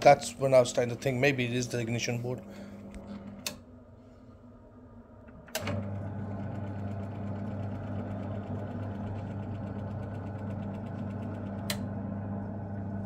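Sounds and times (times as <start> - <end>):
motor low hum: 1.9 - 13.0
motor switch click: 11.6 - 11.9.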